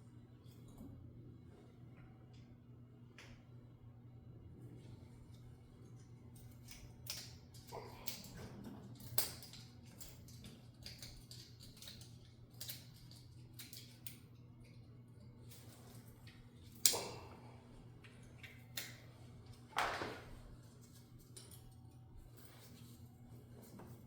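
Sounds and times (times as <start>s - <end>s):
metal parts clicking and clinking: 8.9s - 14.4s.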